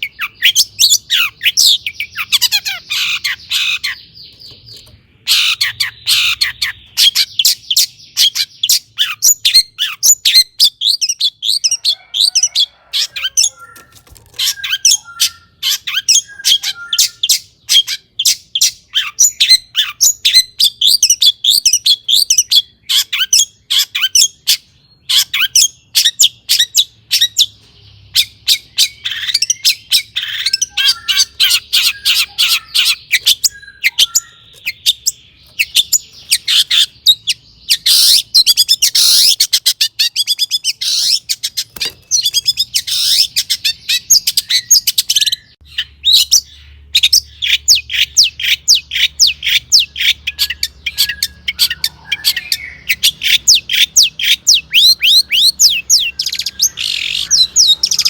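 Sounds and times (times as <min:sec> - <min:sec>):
bird singing chirps and trills: 0:00.0 - 0:58.0.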